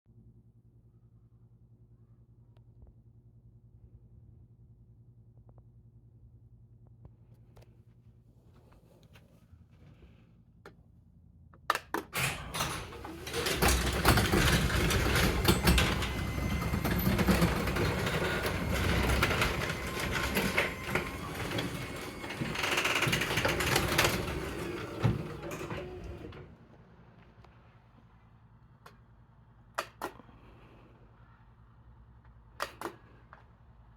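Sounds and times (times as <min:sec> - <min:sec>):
garage door opener clicks: 0:11.8 - 0:26.6
garage door rattling along tracks: 0:12.2 - 0:26.6.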